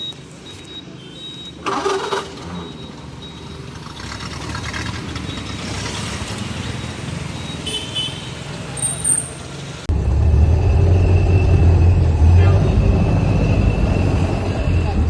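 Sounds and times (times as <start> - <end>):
car engine starting and running: 1.6 - 7.7.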